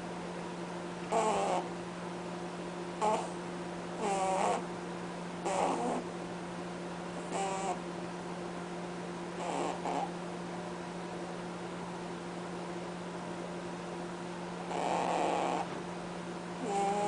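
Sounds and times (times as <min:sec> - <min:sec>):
steady low hum: 0:00.0 - 0:17.0
rabbit honking: 0:01.1 - 0:01.7, 0:03.0 - 0:03.4, 0:05.4 - 0:06.1, 0:07.3 - 0:07.8, 0:16.6 - 0:17.0.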